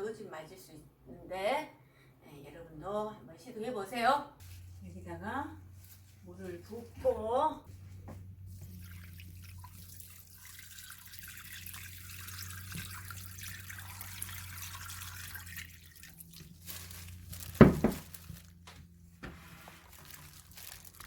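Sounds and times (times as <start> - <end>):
water pouring and splashing: 8.4 - 18.6, 19.6 - 21.0.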